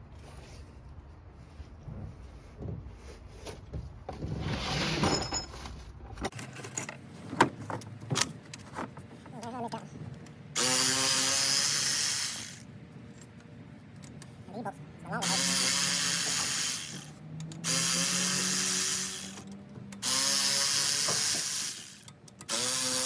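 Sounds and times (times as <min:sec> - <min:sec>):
metal tools clinking: 0:05.0 - 0:07.0
power tool running: 0:10.6 - 0:12.6, 0:15.2 - 0:23.0.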